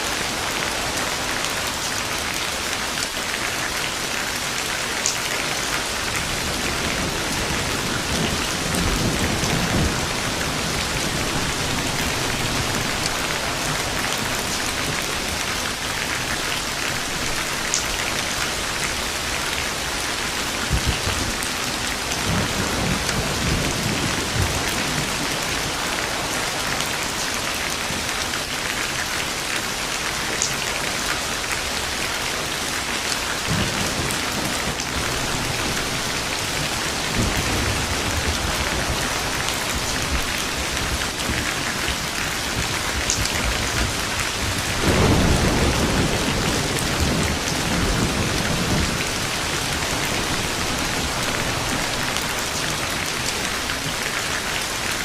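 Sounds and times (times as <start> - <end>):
steady rain falling: 0.0 - 55.0
rolling thunder: 5.8 - 16.1, 17.0 - 27.2, 33.4 - 54.1.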